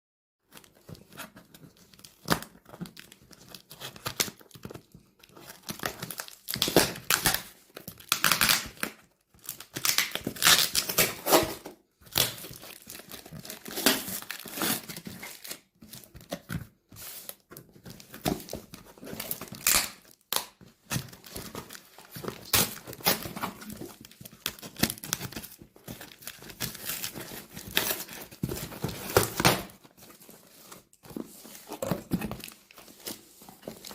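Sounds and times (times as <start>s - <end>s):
packaging crinkling and tearing: 0.6s - 33.9s.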